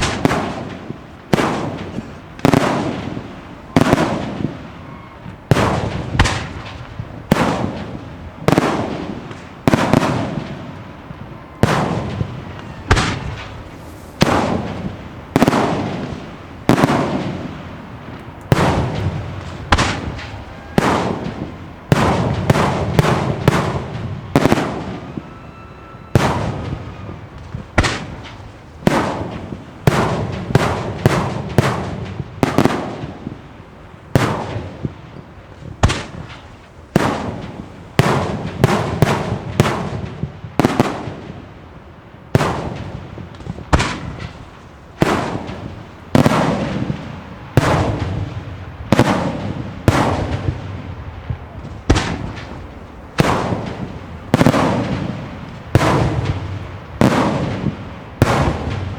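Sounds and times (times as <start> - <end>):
fireworks bangs echoing: 0.0 - 58.9
faint firework whistle: 3.5 - 5.5, 11.2 - 14.8, 18.9 - 28.8.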